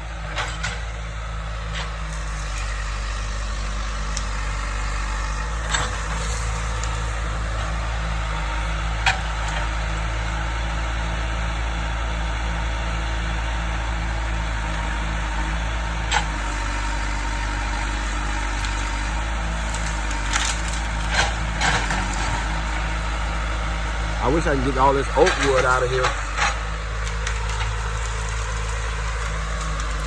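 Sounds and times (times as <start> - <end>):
backhoe diesel engine running: 0.0 - 30.0
wood snapping: 18.5 - 22.8, 25.2 - 30.0.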